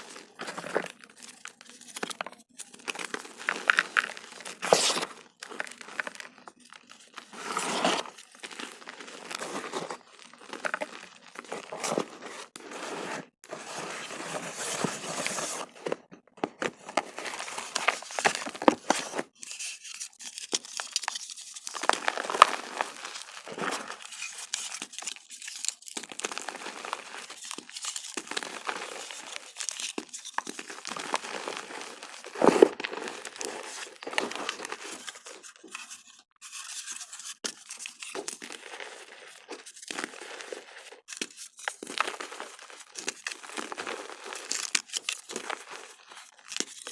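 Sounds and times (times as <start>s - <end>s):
chalk crunching by hand: 3.1s - 6.1s.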